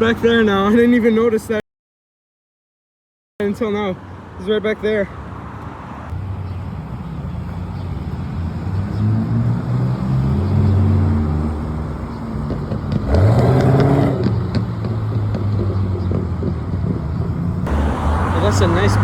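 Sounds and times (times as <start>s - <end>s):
cars driving past: 4.0s - 19.0s
car accelerating past: 8.7s - 19.0s.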